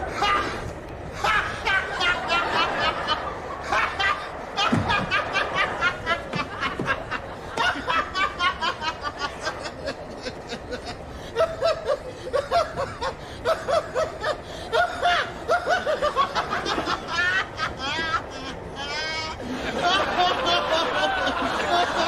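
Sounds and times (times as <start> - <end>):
lower voice laughing: 0.0 - 22.0.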